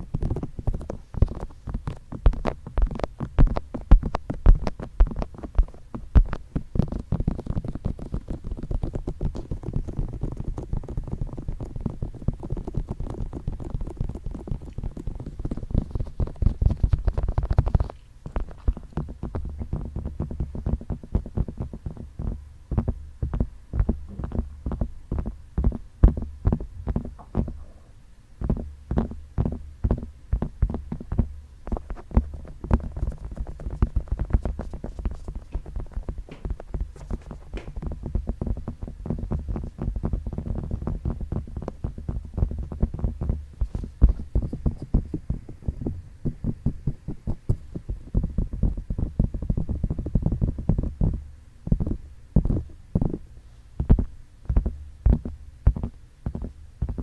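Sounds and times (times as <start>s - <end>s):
fingertips tapping microphone: 0.0s - 57.0s.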